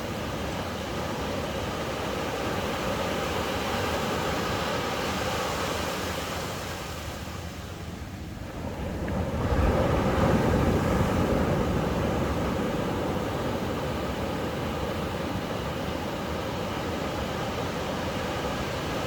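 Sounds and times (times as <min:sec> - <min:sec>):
ocean waves washing on beach: 0:00.0 - 0:19.0.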